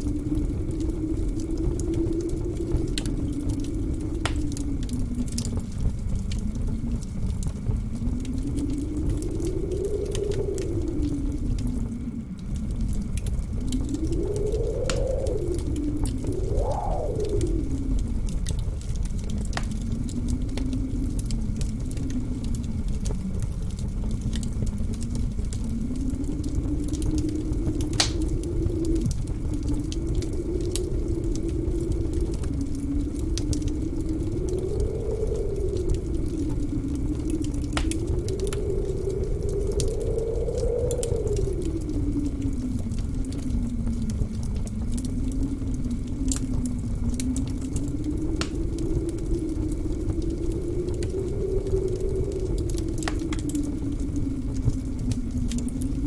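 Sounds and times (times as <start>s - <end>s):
blizzard wind howling: 0.0s - 56.0s
low rumble: 0.0s - 56.0s
wood fire crackling and popping: 0.0s - 56.0s.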